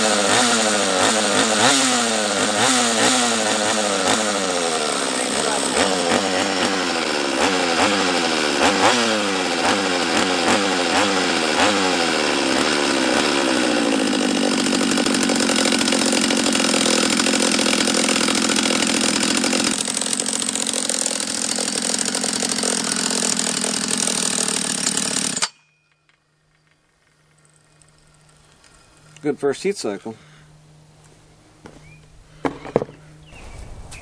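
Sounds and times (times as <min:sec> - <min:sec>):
chainsaw engine revving: 0:00.0 - 0:25.6.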